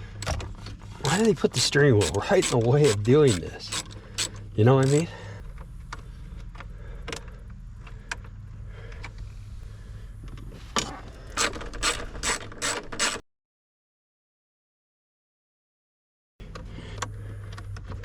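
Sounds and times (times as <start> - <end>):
hand tool clicking: 1.1 - 5.1, 11.4 - 13.2.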